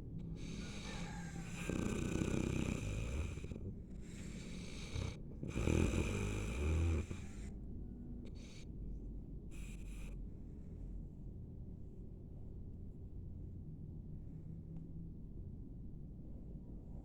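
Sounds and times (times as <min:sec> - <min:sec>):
quiet breathing: 0:00.0 - 0:11.3
long snores: 0:00.4 - 0:07.5.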